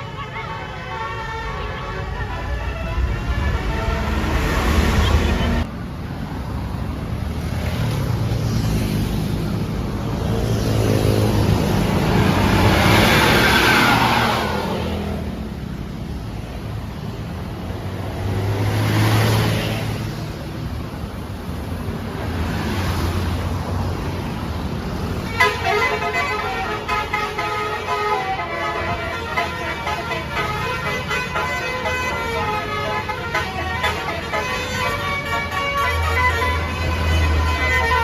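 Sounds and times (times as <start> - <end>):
musical air horn: 0.0 - 5.6, 25.3 - 38.0
buses driving past: 0.0 - 38.0.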